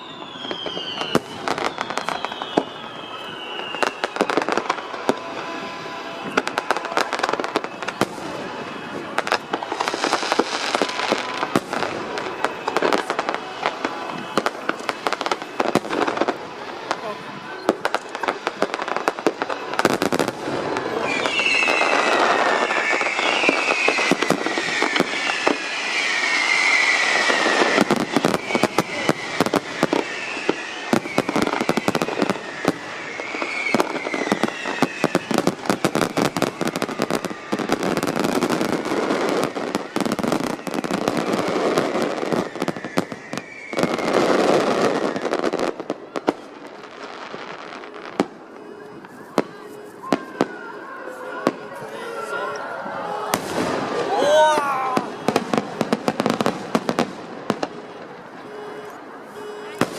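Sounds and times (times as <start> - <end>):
fireworks bangs and crackling: 0.0 - 59.9
high firework whistles: 0.0 - 59.9.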